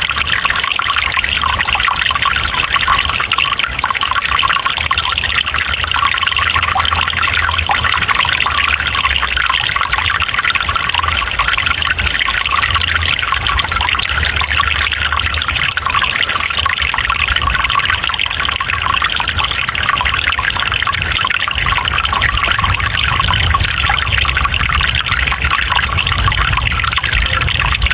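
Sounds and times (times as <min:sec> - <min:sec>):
water trickling and splashing: 0:00.0 - 0:27.9
low rumble: 0:20.9 - 0:27.9.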